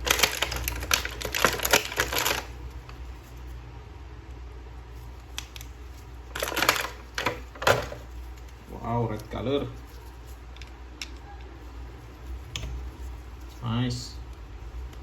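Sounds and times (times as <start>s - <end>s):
plastic toy clicks and rattles: 0.0s - 2.5s, 6.4s - 8.0s.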